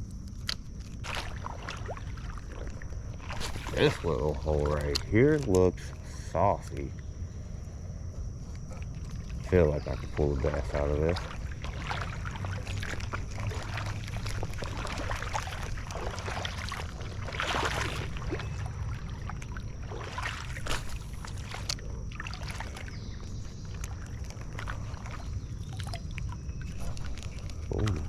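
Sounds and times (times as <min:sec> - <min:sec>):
water sloshing and splashing: 0:00.2 - 0:05.7, 0:08.2 - 0:28.0
steady low rumble: 0:02.8 - 0:17.4.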